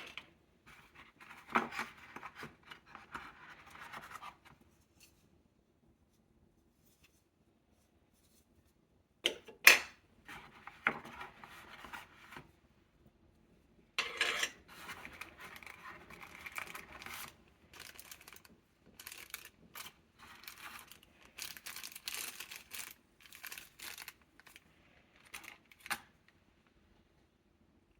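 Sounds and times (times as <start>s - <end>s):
packaging rustling and tearing: 14.7s - 26.1s.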